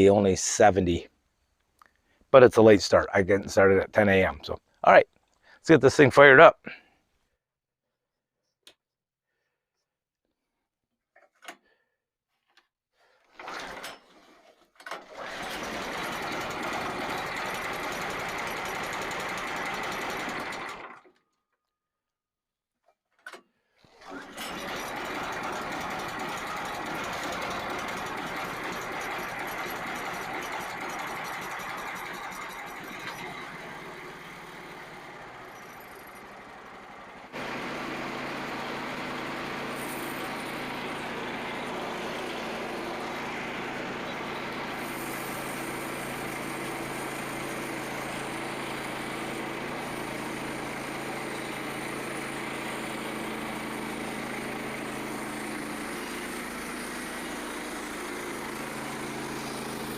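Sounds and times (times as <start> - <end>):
sawmill engine running: 14.9 - 21.0, 23.9 - 59.9.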